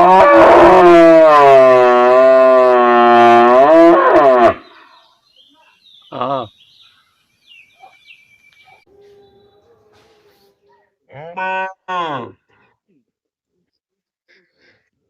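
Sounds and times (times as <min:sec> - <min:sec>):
cow mooing: 0:00.0 - 0:04.6, 0:11.1 - 0:12.4.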